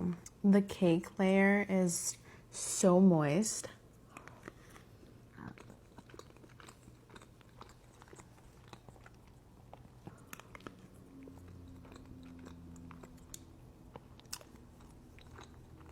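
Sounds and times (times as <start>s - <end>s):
wet chewing mouth clicks: 4.0s - 15.9s.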